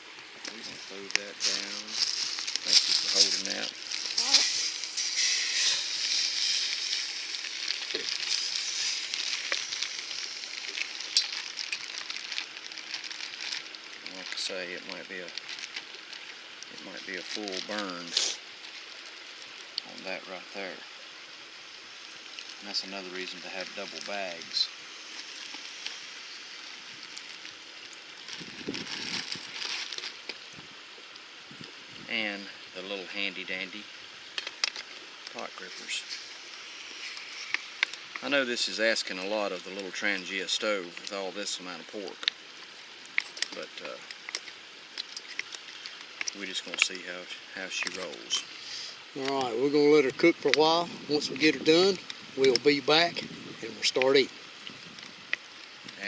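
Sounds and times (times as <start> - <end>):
flowing river water: 0.0 - 51.0, 51.6 - 56.0
pork sizzling in a pan: 1.4 - 20.3, 21.0 - 28.6, 33.8 - 38.2, 47.4 - 53.1.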